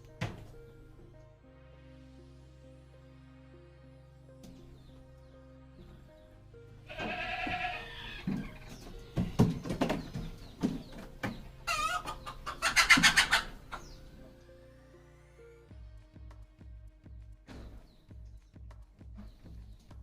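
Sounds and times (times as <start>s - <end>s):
background music: 0.0s - 20.0s
goat bleating: 6.9s - 8.3s
sharp knocks: 8.3s - 11.4s.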